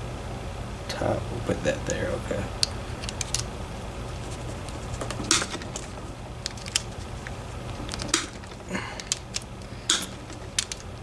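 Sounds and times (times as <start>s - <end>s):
steady low hum: 0.0s - 11.0s
metal lock parts clicking: 2.6s - 3.5s, 4.7s - 11.0s.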